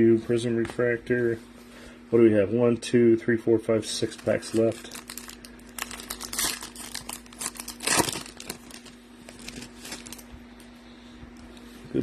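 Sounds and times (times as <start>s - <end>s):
foil wrapper crinkling: 3.9s - 10.7s.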